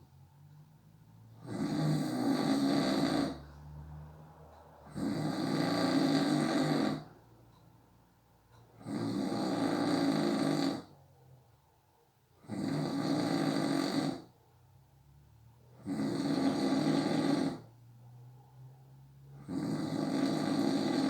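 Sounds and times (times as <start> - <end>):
person snoring: 1.4 - 3.6, 4.9 - 7.2, 8.8 - 10.9, 12.4 - 14.3, 15.8 - 17.7, 19.3 - 21.0.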